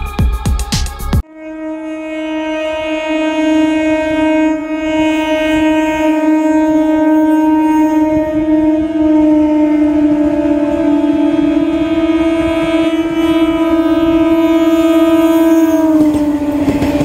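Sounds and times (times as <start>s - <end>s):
train horn long blast: 1.2s - 17.0s
train running rumble: 8.0s - 17.0s.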